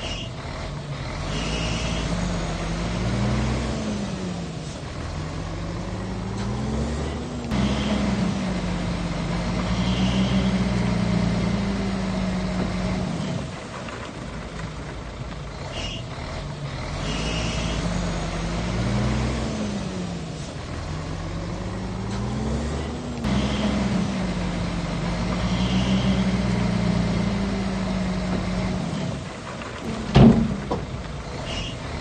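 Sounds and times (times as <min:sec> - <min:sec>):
bulldozer diesel engine under load: 0:00.0 - 0:32.0
brief high squeals: 0:31.5 - 0:31.8.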